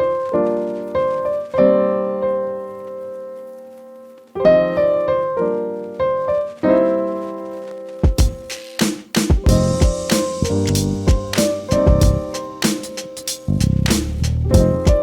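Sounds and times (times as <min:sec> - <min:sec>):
piano chords ringing: 0:00.0 - 0:08.5, 0:09.4 - 0:13.6, 0:14.4 - 0:15.0.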